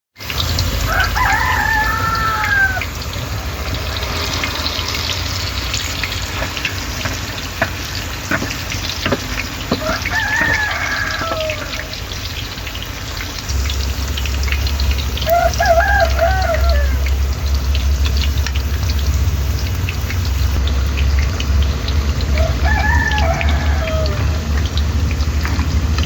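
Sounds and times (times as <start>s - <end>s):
rooster crowing: 0.6s - 3.1s, 9.1s - 12.1s, 15.2s - 17.3s, 22.3s - 24.6s
steady hiss: 1.8s - 20.6s.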